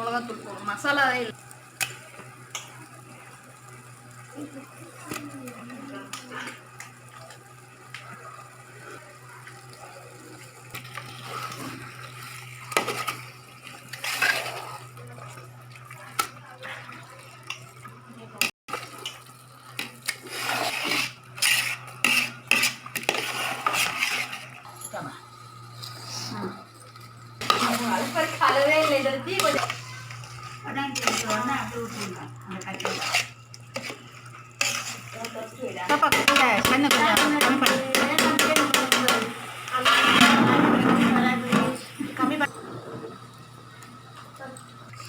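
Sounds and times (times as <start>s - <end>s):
steady low hum: 17.9s - 45.0s
metal spoon scraping a pot: 20.3s - 24.6s, 27.4s - 41.6s.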